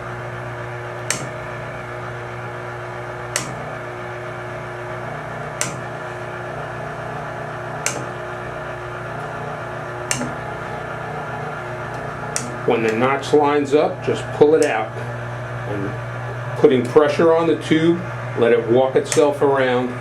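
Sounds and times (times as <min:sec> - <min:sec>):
pump motor humming: 0:00.0 - 0:20.0
pump clicking: 0:01.0 - 0:01.6, 0:03.2 - 0:03.7, 0:05.5 - 0:06.4, 0:07.3 - 0:08.5, 0:09.2 - 0:10.8, 0:11.7 - 0:13.2, 0:14.4 - 0:14.9, 0:19.0 - 0:19.4.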